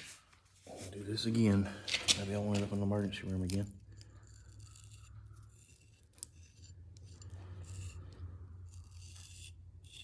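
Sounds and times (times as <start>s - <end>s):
knife edge scraping hair: 4.0s - 8.1s, 8.7s - 10.0s.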